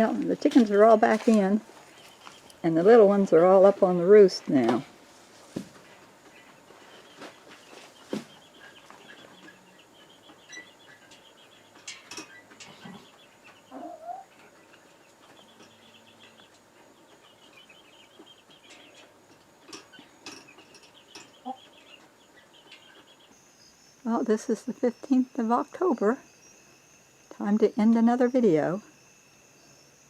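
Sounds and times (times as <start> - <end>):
chickens clucking faintly: 5.4 - 23.4
crickets chirping: 8.3 - 30.0.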